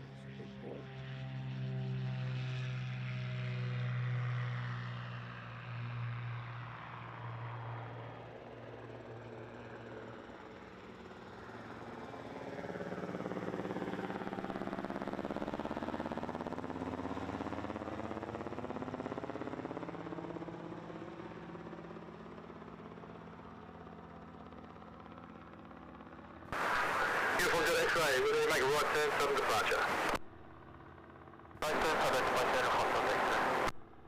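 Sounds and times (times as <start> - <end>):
light aircraft passing by: 0.0 - 14.1, 26.1 - 31.0, 31.6 - 33.7.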